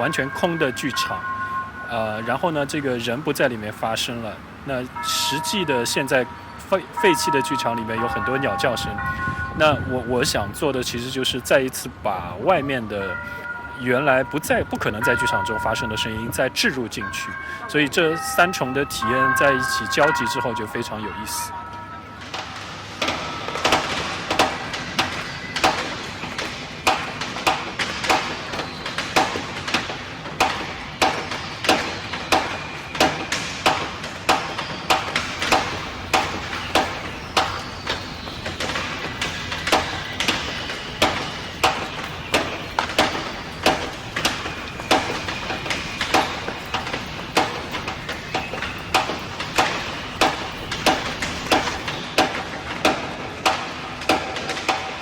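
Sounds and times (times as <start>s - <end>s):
faint high tones: 0.0s - 25.5s
continuous wash of sound: 0.0s - 55.0s
sharp rhythmic knocks: 0.0s - 55.0s.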